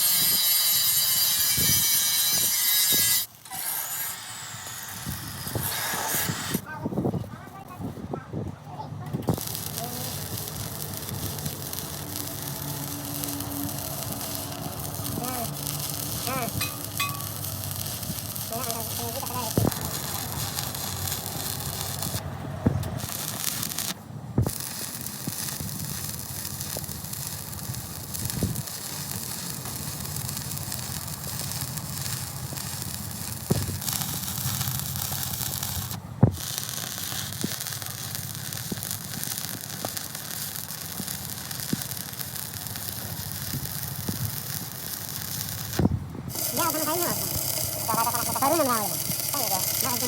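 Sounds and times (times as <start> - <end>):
crackling hiss: 3.2 - 7.8, 9.0 - 50.0.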